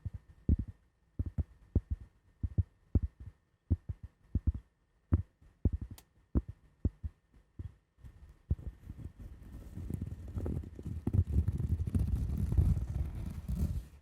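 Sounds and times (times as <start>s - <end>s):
soft scratching rustle: 8.2s - 14.0s.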